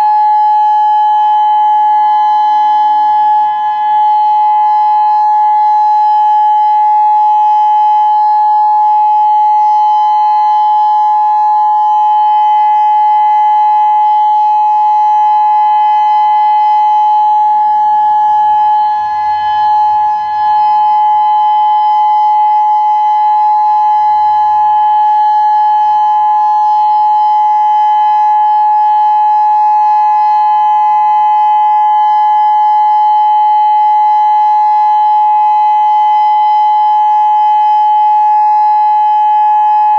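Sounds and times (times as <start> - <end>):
warning siren steady tone: 0.0 - 39.9.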